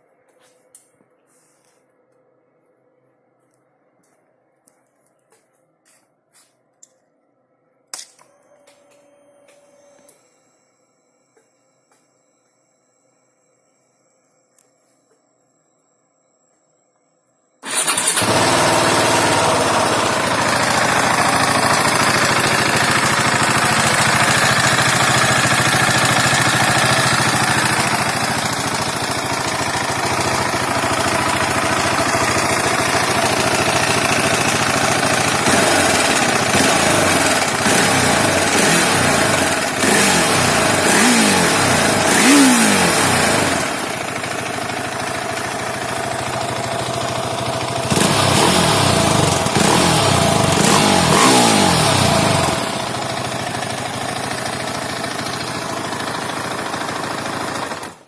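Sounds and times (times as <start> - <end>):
motorcycle engine idling and revving: 17.6 - 58.0.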